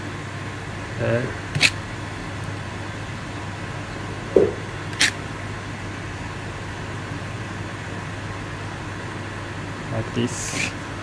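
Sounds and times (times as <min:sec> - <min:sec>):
steady background hum: 0:00.0 - 0:11.0
aerosol spray can puff: 0:01.6 - 0:01.8, 0:04.4 - 0:05.2
short knock: 0:04.4 - 0:04.6.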